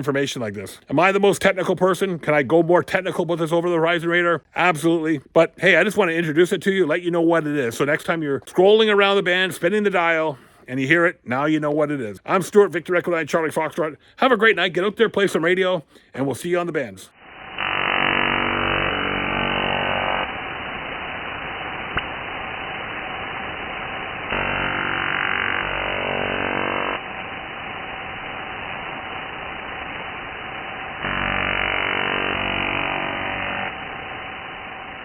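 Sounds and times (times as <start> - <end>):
radio static: 16.2 - 35.0
rapid pulsing radio buzz: 17.2 - 35.0.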